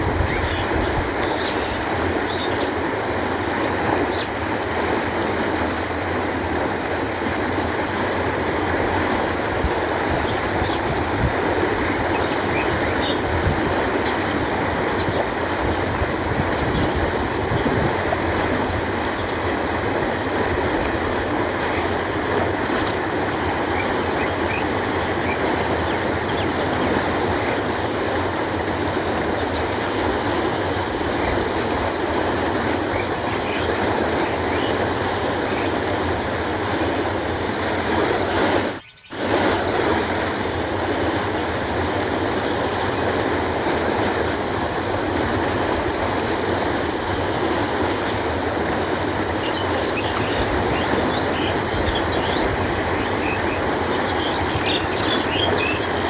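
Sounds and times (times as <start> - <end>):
canal water flowing: 0.0 - 56.0
birds chirping: 0.1 - 4.6, 9.9 - 39.2, 47.2 - 56.0.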